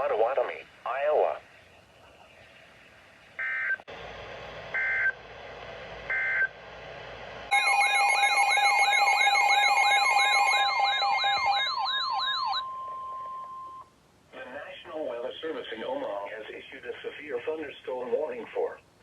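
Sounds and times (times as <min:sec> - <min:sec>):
digital data chirps: 0:07.5 - 0:13.8
warbling electronic alert tone: 0:07.5 - 0:13.8.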